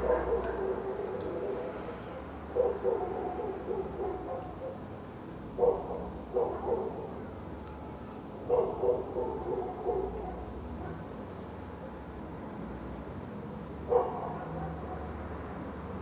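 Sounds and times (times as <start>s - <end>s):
dog barking: 0.0s - 4.8s, 5.6s - 7.2s, 8.5s - 11.1s, 13.9s - 15.3s.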